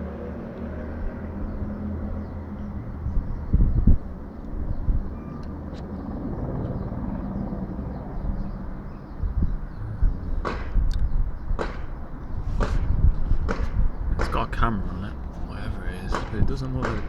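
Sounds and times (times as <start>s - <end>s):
helicopter rumble overhead: 0.0s - 17.0s
car engines revving: 9.6s - 11.4s.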